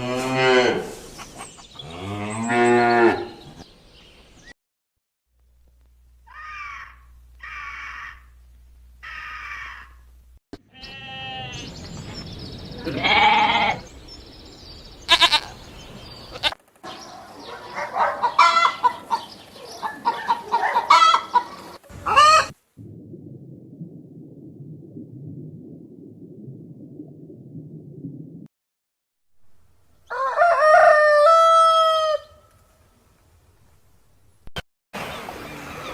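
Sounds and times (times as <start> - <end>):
low steady rumble: 22.8 - 28.5.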